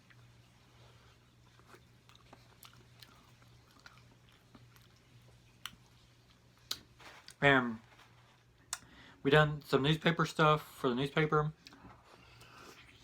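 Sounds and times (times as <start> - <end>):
person chewing soft food: 0.0 - 7.4
faint low hum: 0.0 - 13.0.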